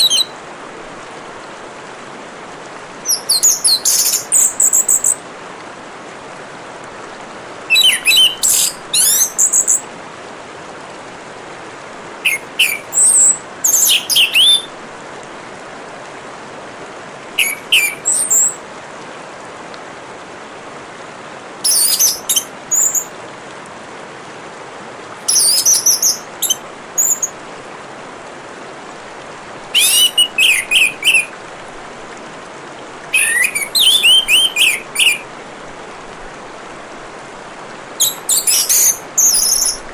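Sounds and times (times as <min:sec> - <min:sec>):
bird singing chirps and whistles: 0:00.0 - 0:00.3, 0:03.1 - 0:05.2, 0:07.7 - 0:09.8, 0:12.2 - 0:14.7, 0:17.4 - 0:18.6, 0:21.6 - 0:23.1, 0:25.3 - 0:27.4, 0:29.7 - 0:31.3, 0:33.1 - 0:35.2, 0:38.0 - 0:39.9
trickling water: 0:00.0 - 0:39.9.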